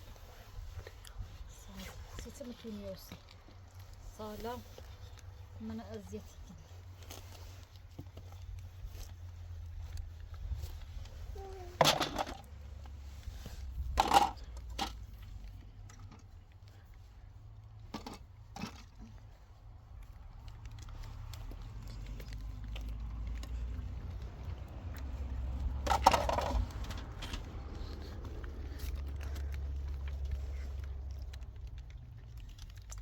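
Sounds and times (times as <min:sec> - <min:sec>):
low steady rumble: 0:00.0 - 0:33.0
objects clattering: 0:11.7 - 0:12.5, 0:13.9 - 0:15.0, 0:25.7 - 0:27.5
objects clicking and knocking: 0:11.8 - 0:12.5, 0:13.8 - 0:15.1, 0:17.9 - 0:19.2, 0:25.6 - 0:27.8.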